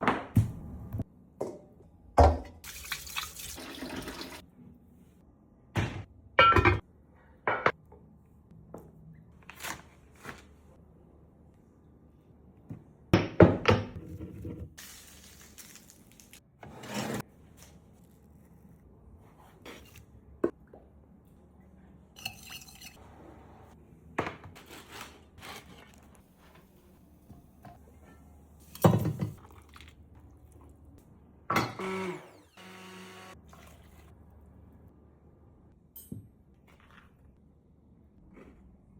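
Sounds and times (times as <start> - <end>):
water running from a tap: 2.6 - 4.4.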